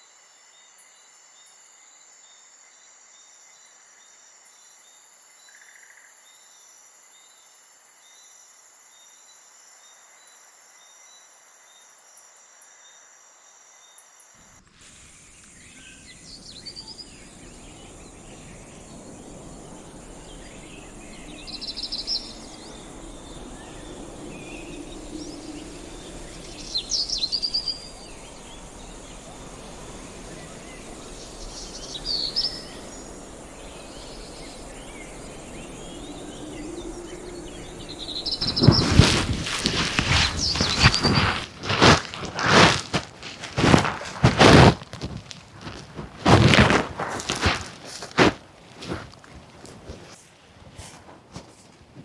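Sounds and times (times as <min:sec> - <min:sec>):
crickets and insects trilling: 0:38.4 - 0:50.2.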